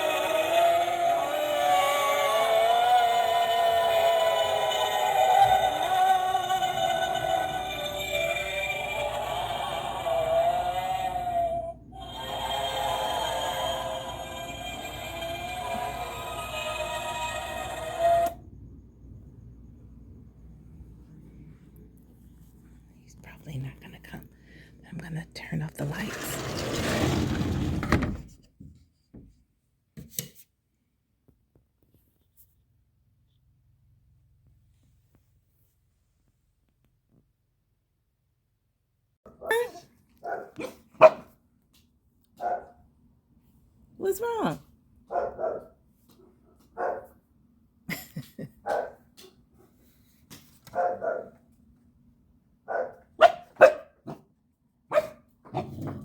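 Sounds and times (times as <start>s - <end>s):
puppy barking: 39.3s - 41.4s, 42.4s - 42.8s, 45.1s - 45.8s, 46.6s - 47.2s, 48.6s - 49.1s, 50.7s - 51.4s, 52.7s - 54.3s, 54.9s - 55.8s.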